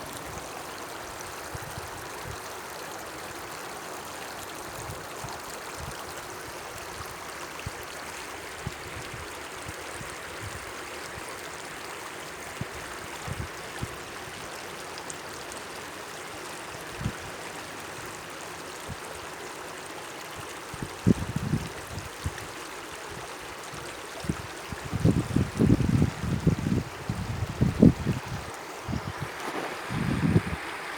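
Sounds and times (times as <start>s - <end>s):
stream babbling over stones: 0.0s - 30.9s
wind buffeting microphone: 20.8s - 22.4s, 24.2s - 30.9s.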